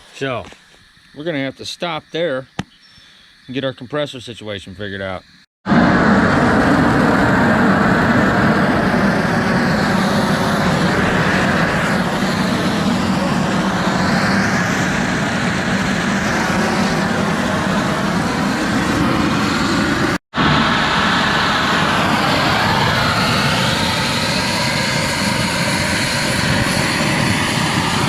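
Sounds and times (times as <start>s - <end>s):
low hum: 5.2s - 28.0s
steam cleaner rushing noise: 5.7s - 28.0s.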